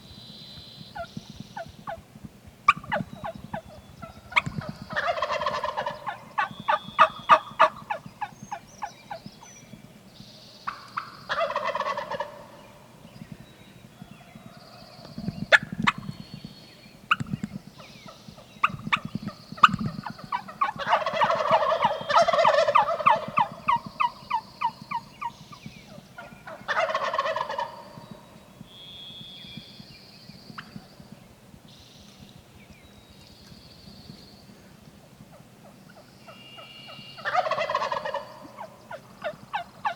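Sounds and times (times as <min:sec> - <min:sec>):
turkeys gobbling: 0:00.9 - 0:02.0, 0:02.7 - 0:09.3, 0:10.7 - 0:12.8, 0:18.6 - 0:28.2, 0:37.2 - 0:39.9
turkey yelping notes: 0:02.7 - 0:08.3, 0:10.7 - 0:12.6, 0:19.6 - 0:25.4, 0:26.2 - 0:28.0, 0:37.2 - 0:39.9.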